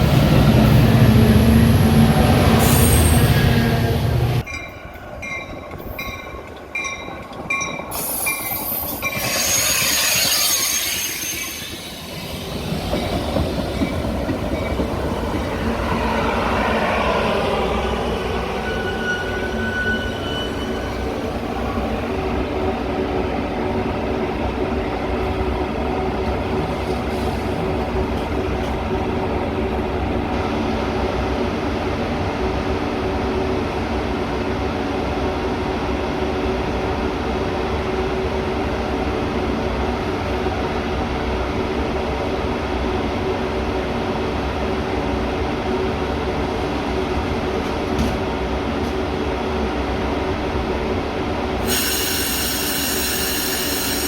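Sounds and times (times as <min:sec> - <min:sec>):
train rumbling: 0:00.0 - 0:54.0
wheel squeal: 0:08.1 - 0:12.1, 0:18.4 - 0:21.2.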